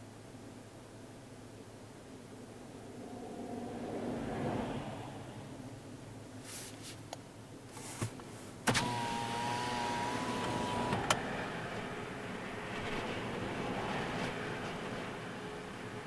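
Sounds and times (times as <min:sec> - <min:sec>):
wind noise around car: 0:07.8 - 0:16.0
window motor click: 0:08.6 - 0:11.9
power window motor whining: 0:08.6 - 0:13.0.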